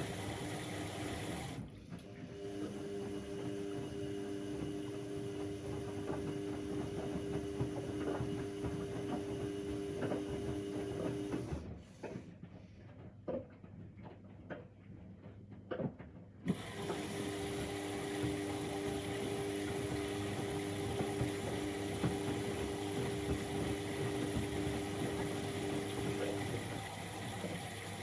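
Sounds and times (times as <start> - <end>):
washing machine humming: 0.0 - 12.1, 16.5 - 28.0
water and laundry splashing in drum: 16.5 - 28.0.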